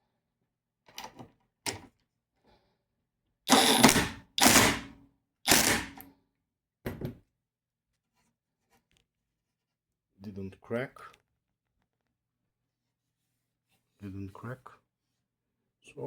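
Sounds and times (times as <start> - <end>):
cordless drill into wood: 3.5 - 6.0.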